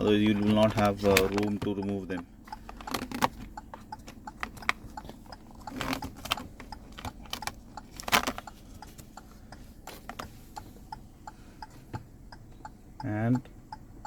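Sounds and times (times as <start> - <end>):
plastic clatter: 0.2 - 1.8, 2.5 - 3.8, 4.4 - 9.0.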